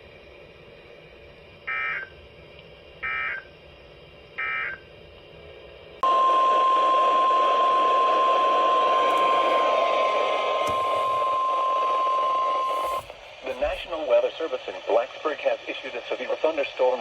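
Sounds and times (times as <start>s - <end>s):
single-pitch warning alarm tone: 1.6s - 2.1s, 3.0s - 3.5s, 4.4s - 4.8s, 6.0s - 9.9s, 10.7s - 13.0s
radio static: 10.7s - 11.4s, 12.3s - 17.0s
radio hiss: 12.3s - 17.0s.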